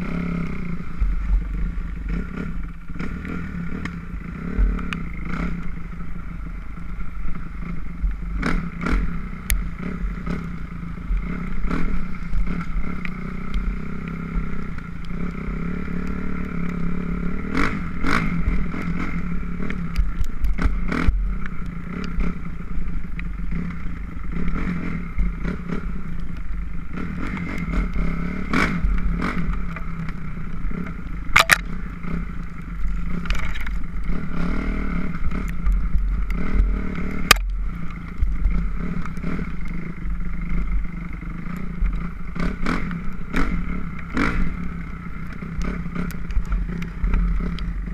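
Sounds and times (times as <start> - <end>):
dirt bike engine running: 0.0 - 47.9
sharp knocks and clatter: 31.3 - 31.7.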